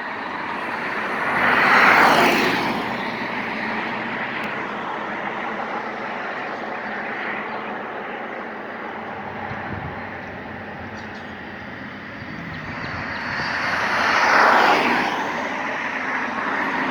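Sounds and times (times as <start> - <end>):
vehicle and road noise: 0.0 - 16.9
vehicle passing by: 0.3 - 5.1, 9.3 - 16.9.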